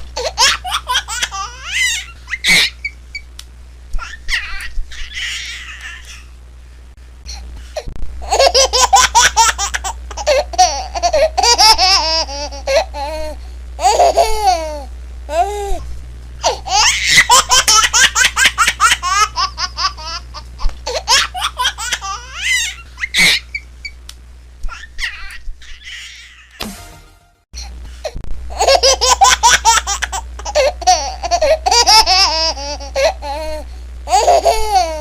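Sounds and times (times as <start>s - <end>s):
baby giggling: 0.2s - 3.0s, 8.2s - 13.2s, 13.8s - 15.5s, 16.4s - 23.6s, 28.5s - 35.0s.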